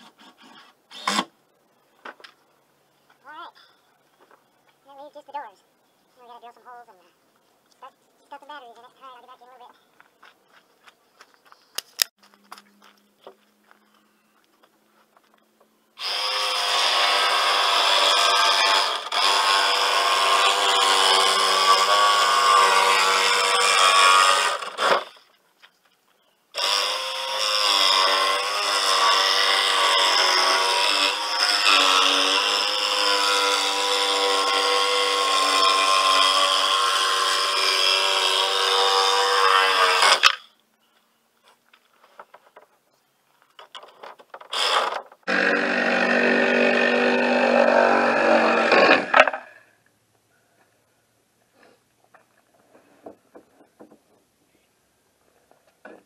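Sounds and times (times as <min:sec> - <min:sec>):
power tool motor running: 0:16.0 - 0:25.0, 0:26.6 - 0:40.3.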